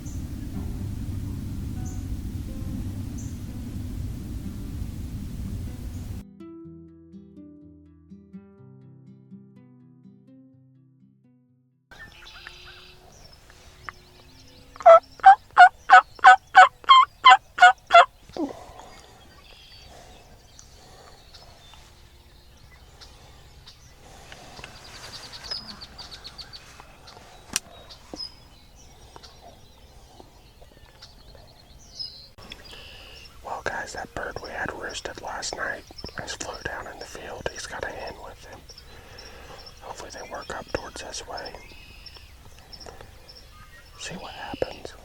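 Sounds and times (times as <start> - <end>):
turkey yelps: 14.8 - 18.1.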